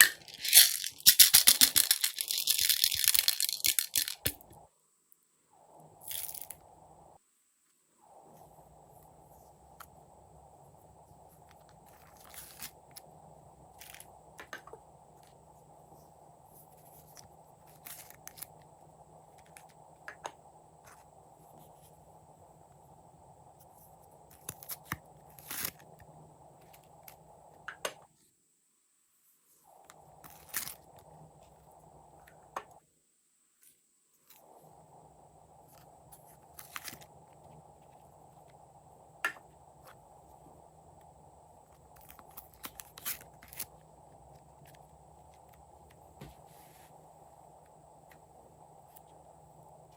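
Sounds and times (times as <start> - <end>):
steady background noise: 0.0 - 4.8.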